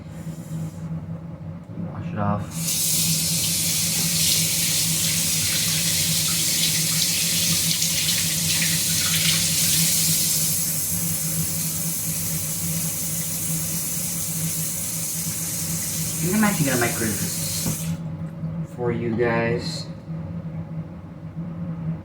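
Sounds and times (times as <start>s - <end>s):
steady low hum: 0.0s - 22.0s
tap running into a sink: 17.5s - 18.0s.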